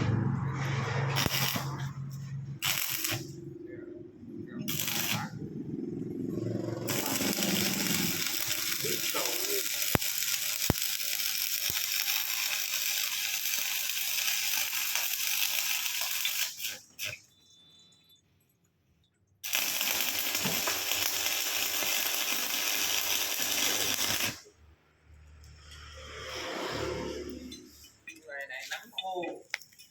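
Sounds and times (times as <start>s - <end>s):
welding crackling hiss: 1.2s - 2.0s, 2.6s - 3.4s, 4.7s - 5.4s, 6.8s - 17.3s, 19.4s - 24.5s.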